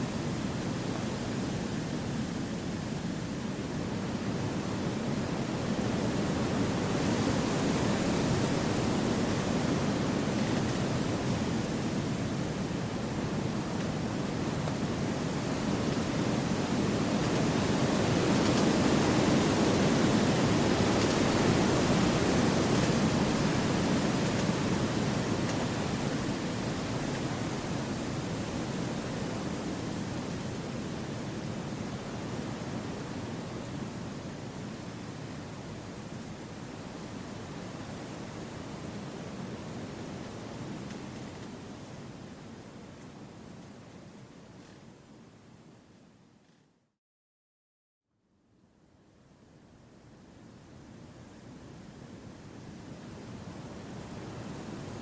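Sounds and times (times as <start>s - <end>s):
wind blowing through trees: 0.0s - 45.9s.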